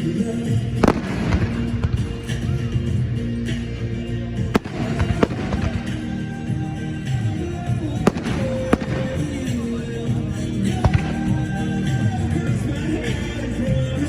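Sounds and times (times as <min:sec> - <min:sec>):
music with sustained notes: 0:00.0 - 0:14.0
fireworks bangs: 0:00.8 - 0:02.4, 0:04.6 - 0:06.2, 0:08.0 - 0:09.7.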